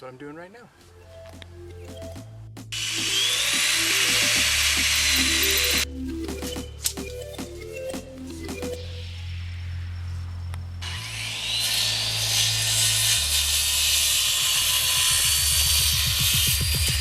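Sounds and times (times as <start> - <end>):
background music with deep bass: 0.8 - 10.7
hiss of cutting or grinding: 2.8 - 5.8, 10.8 - 17.0
power tool motor whine: 2.8 - 5.9, 9.2 - 17.0.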